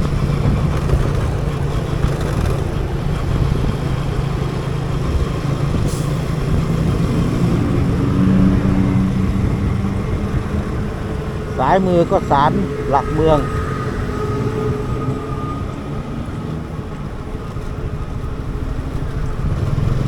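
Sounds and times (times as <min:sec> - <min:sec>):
motorcycle engine running: 0:00.0 - 0:05.6.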